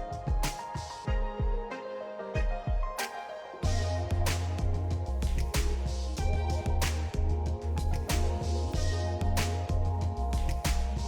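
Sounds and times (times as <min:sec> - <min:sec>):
electronic music with heavy bass: 0:03.6 - 0:11.0.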